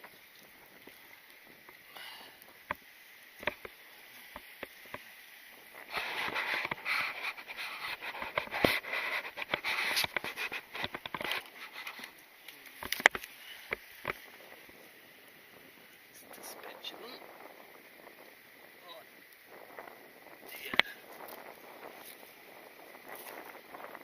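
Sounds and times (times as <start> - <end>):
rustling and scraping: 2.5 - 14.8, 19.5 - 24.0.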